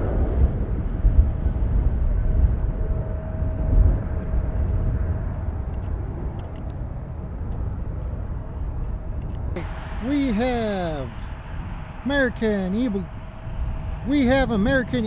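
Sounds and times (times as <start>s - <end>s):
jet airliner engine: 0.0s - 15.0s
wind buffeting microphone: 0.0s - 15.0s
steady whine: 8.3s - 15.0s.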